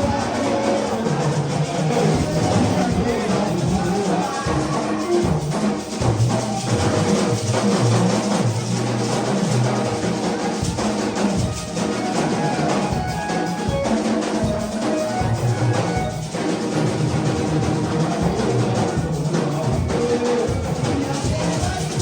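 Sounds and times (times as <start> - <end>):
band music with drums and bass: 0.0 - 22.0.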